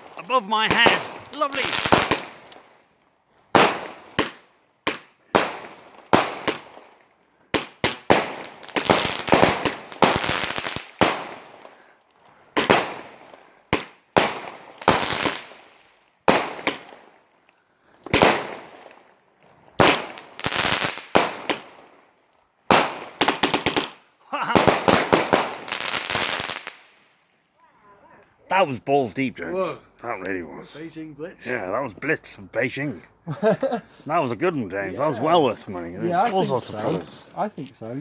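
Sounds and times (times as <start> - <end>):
firework barrage bangs: 0.0 - 2.5, 24.6 - 26.7.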